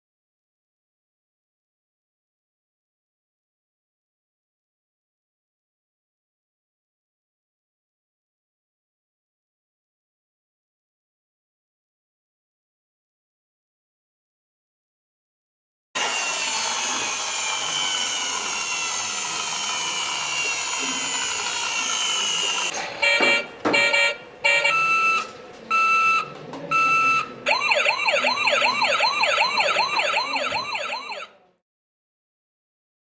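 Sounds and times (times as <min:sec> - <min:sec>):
horn-like electronic beeps: 0:22.0 - 0:31.3
fast wailing toy siren: 0:26.9 - 0:31.4.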